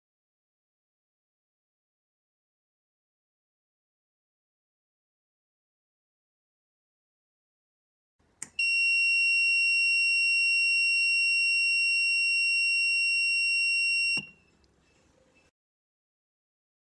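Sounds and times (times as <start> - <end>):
high-pitched buzzer beep: 8.6 - 14.4
buzzer click: 13.6 - 14.4.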